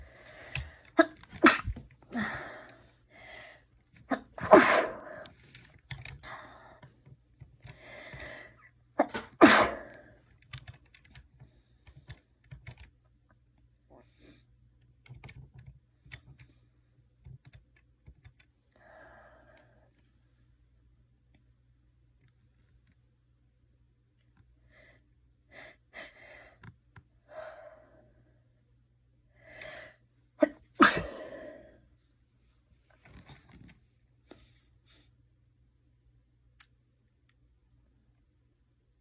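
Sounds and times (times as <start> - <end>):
person sneezing: 1.0 - 2.7, 4.1 - 5.3, 9.0 - 10.1, 30.4 - 31.7
breathy in-breaths: 2.1 - 3.7, 4.9 - 7.0, 18.7 - 19.9, 27.3 - 28.2
faint small clicks: 36.5 - 37.9.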